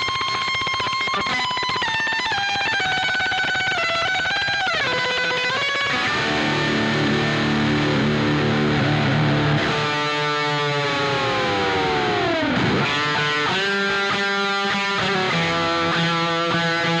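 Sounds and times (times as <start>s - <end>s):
guitar pitch dive: 0.0s - 17.0s
rock music with distorted guitar: 0.0s - 17.0s.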